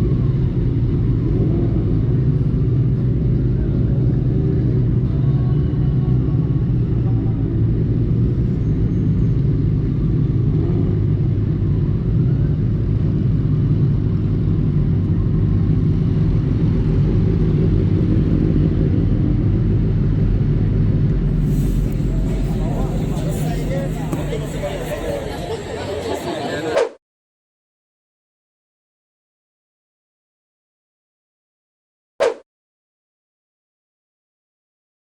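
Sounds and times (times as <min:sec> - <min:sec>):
motorcycle engine running: 0:21.2 - 0:25.2.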